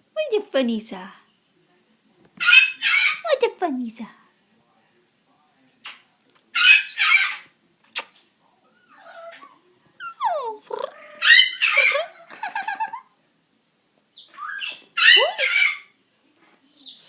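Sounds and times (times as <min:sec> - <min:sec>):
parrot chattering: 0:02.4 - 0:03.3, 0:06.6 - 0:08.2, 0:08.8 - 0:13.0, 0:14.2 - 0:15.9
parrot squawking: 0:02.4 - 0:03.3, 0:06.6 - 0:07.5, 0:08.8 - 0:13.0, 0:14.2 - 0:16.0.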